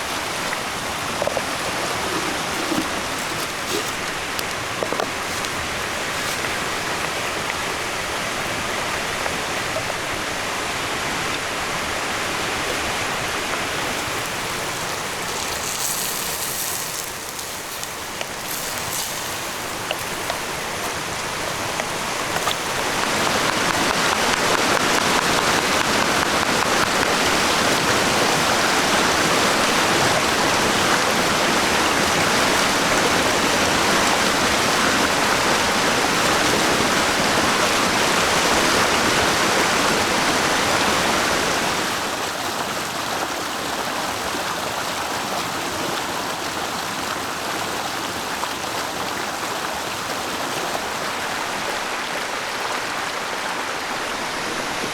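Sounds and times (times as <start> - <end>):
rushing water: 0.0 - 54.9.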